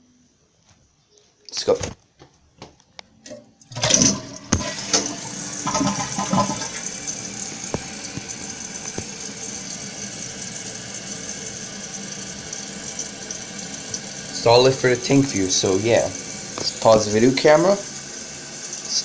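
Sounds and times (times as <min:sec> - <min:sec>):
toilet flush clunk and click: 0:03.3 - 0:07.0, 0:07.6 - 0:09.2
toilet tank refilling hiss: 0:03.7 - 0:19.0
water rushing out of toilet tank: 0:03.7 - 0:19.0.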